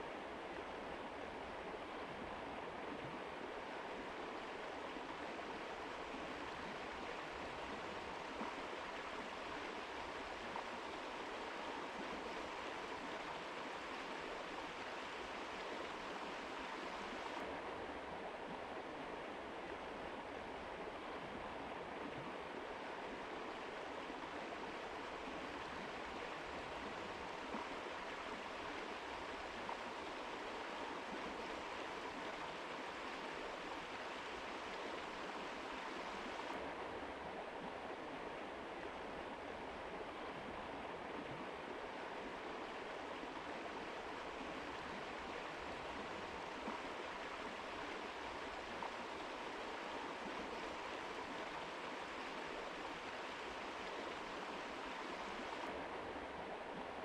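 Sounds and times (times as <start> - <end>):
river rushing over rocks: 41.4 - 57.0.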